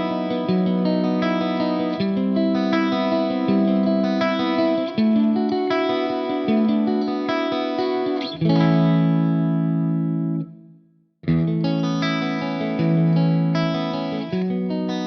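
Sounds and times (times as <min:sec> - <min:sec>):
electric guitar through amp: 0:00.0 - 0:10.6.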